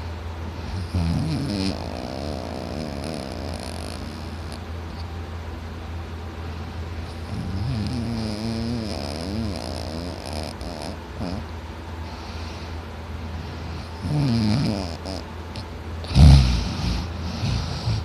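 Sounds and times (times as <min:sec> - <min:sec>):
steady low hum: 0:00.0 - 0:18.0
man snoring loudly: 0:00.7 - 0:04.6, 0:07.3 - 0:11.4, 0:14.0 - 0:15.2, 0:16.1 - 0:18.0.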